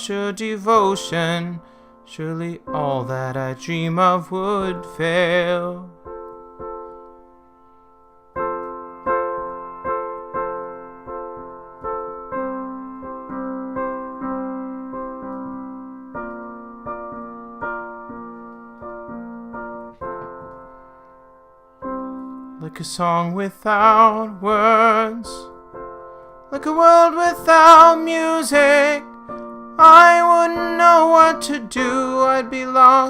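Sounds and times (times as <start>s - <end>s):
solo piano chords and notes: 0.0s - 33.0s.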